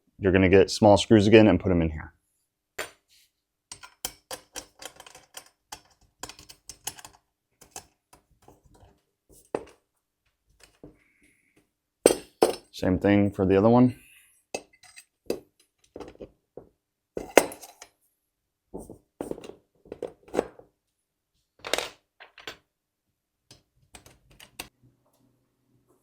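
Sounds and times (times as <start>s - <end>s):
screws and metal parts clinking: 3.7s - 8.0s, 14.6s - 16.2s, 17.2s - 18.0s.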